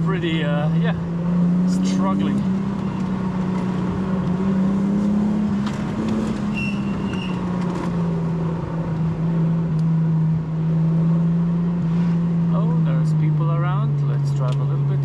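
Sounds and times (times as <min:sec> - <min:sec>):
car engine running: 0:00.0 - 0:15.0
high squeal: 0:06.5 - 0:07.5.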